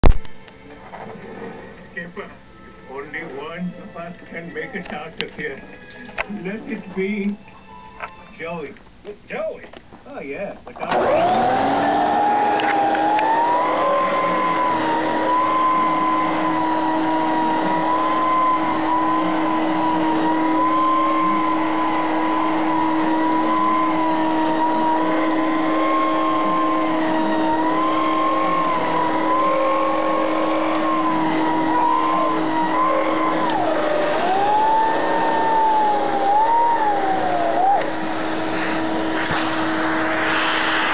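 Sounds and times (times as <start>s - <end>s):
vacuum cleaner motor whining: 10.8s - 40.9s.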